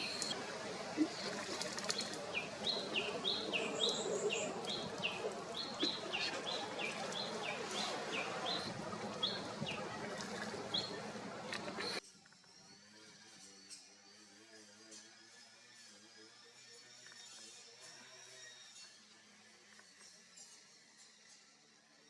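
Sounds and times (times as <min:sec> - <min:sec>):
bird trill: 0:01.0 - 0:11.1.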